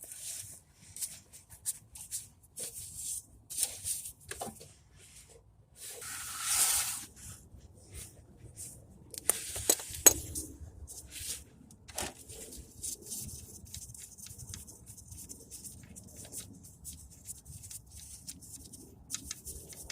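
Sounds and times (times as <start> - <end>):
rustling scrape: 0.0 - 19.8
light rubbing and ticks: 12.2 - 19.9.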